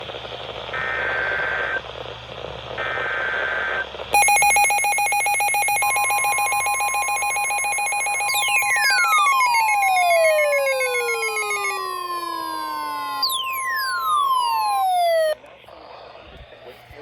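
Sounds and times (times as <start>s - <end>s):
electronic tone bursts: 4.2s - 15.4s
pulsing buzzing alert tone: 4.2s - 15.4s
steady alarm tone: 4.2s - 15.4s
falling pitch sweeps: 6.7s - 15.4s.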